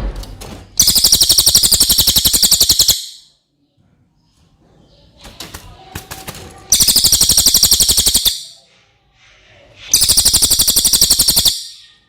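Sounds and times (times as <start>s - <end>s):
songbird trilling: 0.8s - 3.3s, 6.7s - 8.6s, 10.0s - 11.8s.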